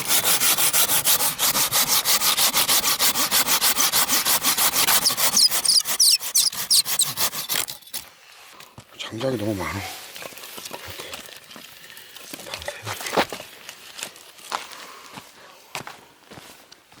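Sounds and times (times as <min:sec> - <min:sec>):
hand saw cutting wood: 0:00.0 - 0:08.0
saw blade squeaking: 0:04.4 - 0:08.0.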